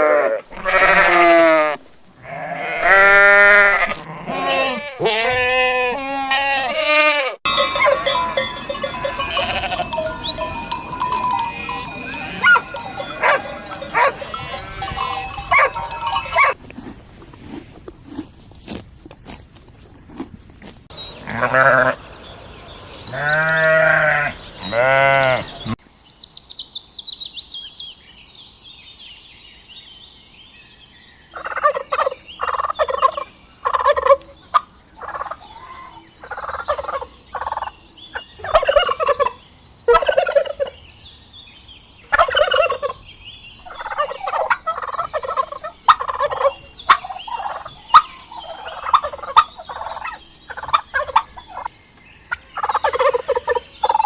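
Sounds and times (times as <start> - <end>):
drawn-out animal calls: 0.0 - 16.6
poultry rattling calls: 7.5 - 16.6, 38.4 - 40.7, 42.1 - 43.0, 43.6 - 51.7, 52.3 - 54.0.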